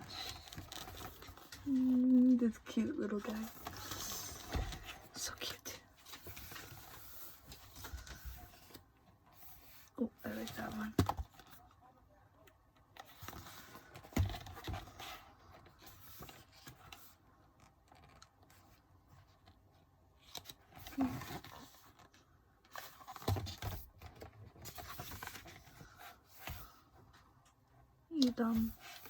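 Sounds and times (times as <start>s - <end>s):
paper rustling and scraping: 0.0s - 11.5s, 20.2s - 27.1s.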